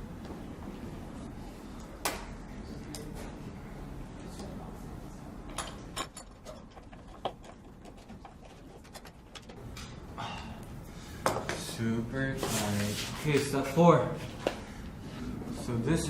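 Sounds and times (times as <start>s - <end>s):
furniture parts clicking and knocking: 5.6s - 9.6s.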